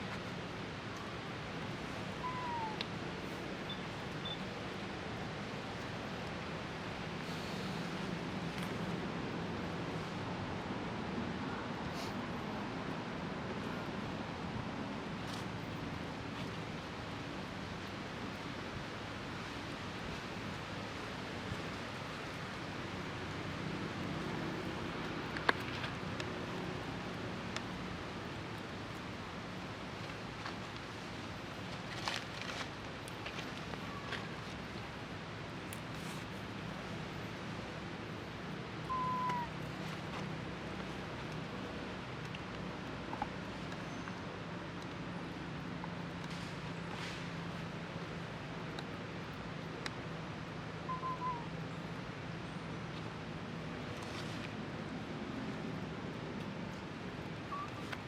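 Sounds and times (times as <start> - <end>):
outdoor background hiss: 0.0 - 58.0
short falling whistle: 38.9 - 39.5.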